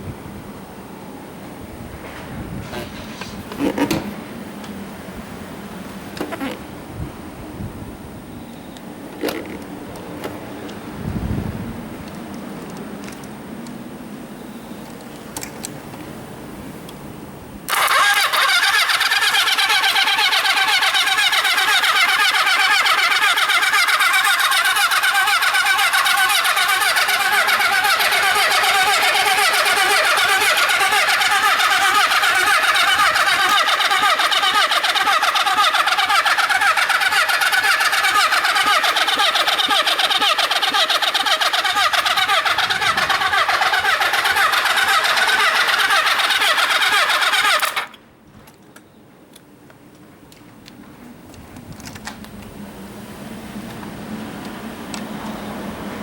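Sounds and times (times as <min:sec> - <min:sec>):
starter motor cranking engine: 0:02.6 - 0:04.2, 0:06.0 - 0:06.7, 0:09.0 - 0:10.5, 0:17.7 - 0:48.0.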